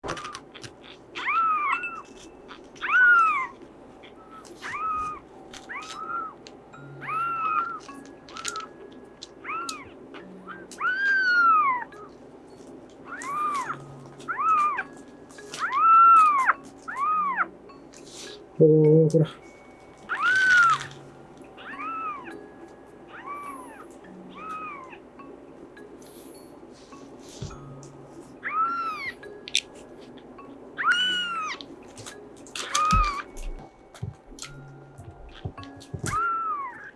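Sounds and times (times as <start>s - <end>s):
kitten meowing: 0.5s - 2.1s, 2.8s - 3.6s, 4.6s - 6.4s, 7.0s - 7.8s, 9.4s - 11.9s, 13.1s - 14.9s, 15.6s - 17.5s, 20.1s - 20.9s, 21.6s - 22.4s, 23.1s - 25.0s, 28.4s - 29.2s, 30.8s - 31.7s, 32.6s - 33.6s, 36.0s - 36.9s.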